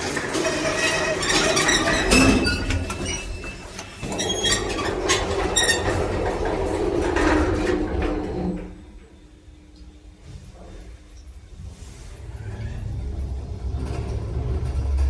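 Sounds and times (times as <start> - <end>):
lift squeaking: 0.0 - 9.4
lift rumbling in shaft: 0.0 - 15.0.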